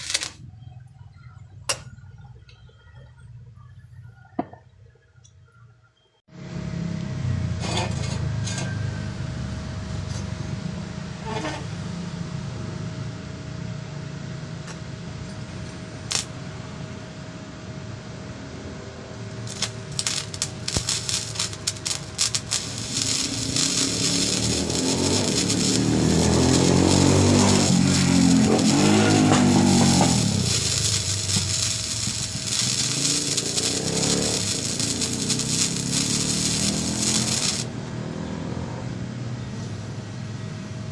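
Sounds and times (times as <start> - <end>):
welding crackle: 0.0 - 0.4, 16.1 - 16.4, 19.3 - 37.8
steady low hum: 12.2 - 37.8.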